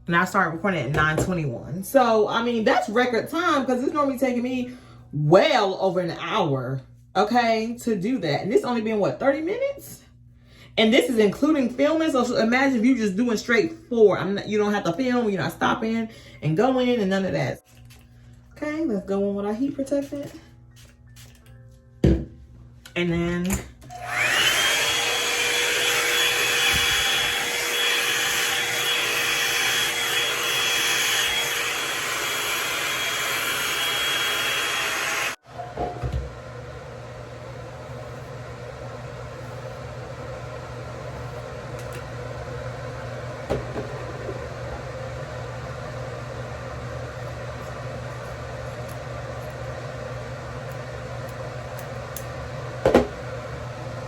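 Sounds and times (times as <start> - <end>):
hair dryer motor and air rush: 23.8 - 54.0.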